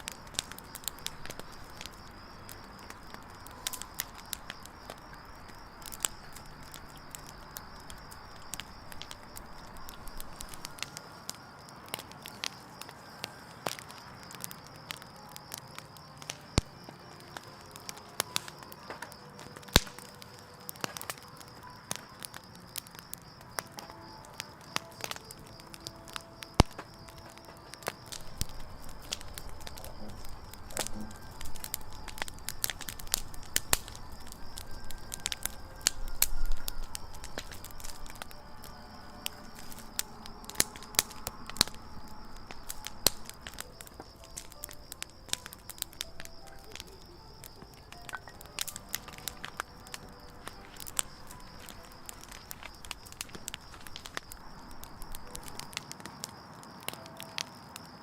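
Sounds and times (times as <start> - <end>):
campfire crackling: 0.0 - 58.0
sharp fire snaps: 0.0 - 58.0.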